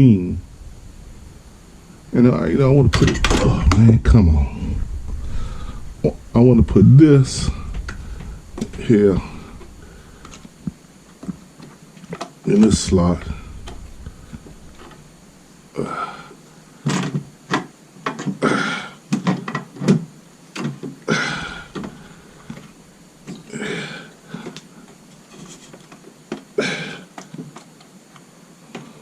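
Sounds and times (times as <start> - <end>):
person breathing heavily: 4.5 - 6.5, 7.3 - 10.5, 21.1 - 22.6, 23.5 - 24.6.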